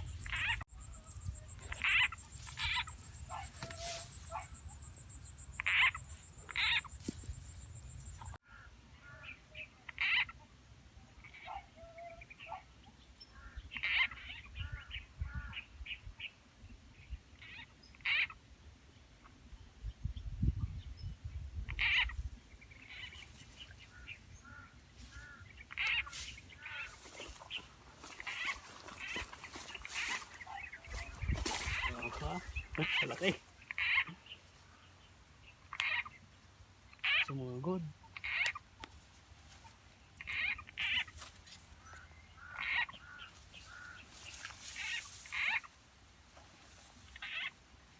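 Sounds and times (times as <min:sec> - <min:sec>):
frogs croaking: 0:00.0 - 0:09.3, 0:21.7 - 0:47.9.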